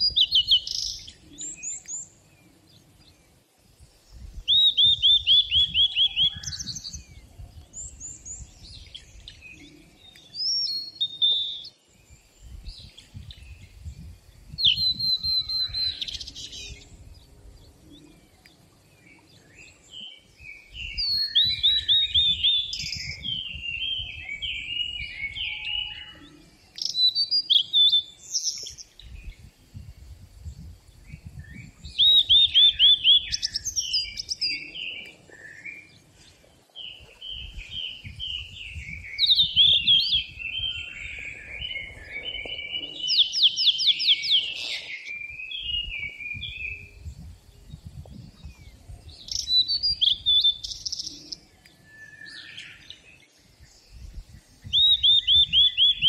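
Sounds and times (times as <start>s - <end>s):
forest songbirds singing: 0.0s - 56.0s.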